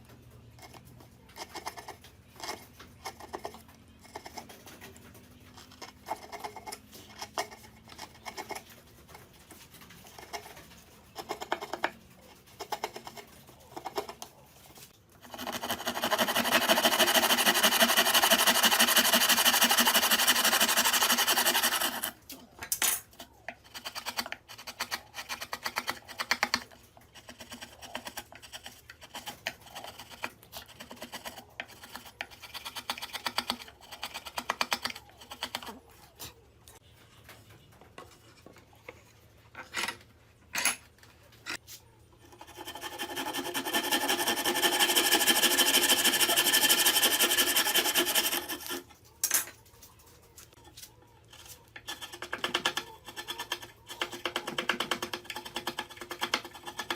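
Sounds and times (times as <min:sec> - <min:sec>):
tool scraping across wood: 0:00.0 - 0:22.2, 0:41.4 - 0:49.0.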